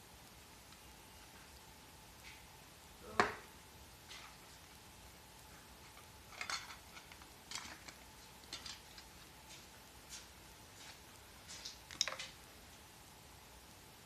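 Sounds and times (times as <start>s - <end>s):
small parts clicking and scraping: 5.8s - 10.3s, 11.4s - 12.4s.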